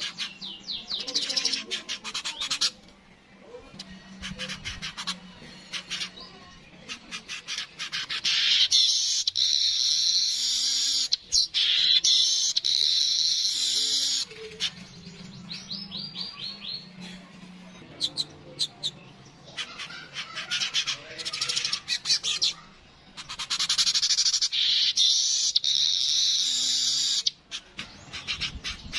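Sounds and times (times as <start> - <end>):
weaver bird singing: 0.0 - 2.7, 5.8 - 17.0, 21.2 - 28.9.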